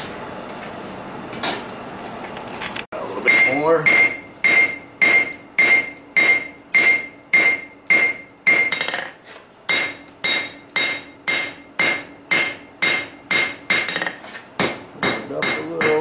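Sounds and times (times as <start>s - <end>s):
hammer striking metal on anvil: 3.2s - 9.1s, 9.7s - 16.0s.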